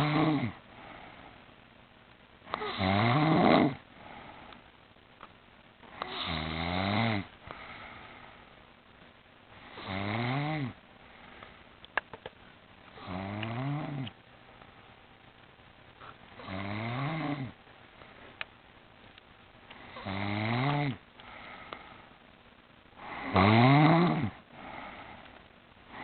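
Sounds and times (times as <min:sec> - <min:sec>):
person snoring: 0:00.0 - 0:00.6, 0:02.5 - 0:03.8, 0:05.9 - 0:08.0, 0:09.6 - 0:10.8, 0:13.0 - 0:14.1, 0:16.4 - 0:17.6, 0:19.9 - 0:21.6, 0:23.0 - 0:25.2
quiet breathing: 0:00.0 - 0:01.8, 0:03.6 - 0:04.8, 0:05.8 - 0:06.5, 0:07.2 - 0:26.0.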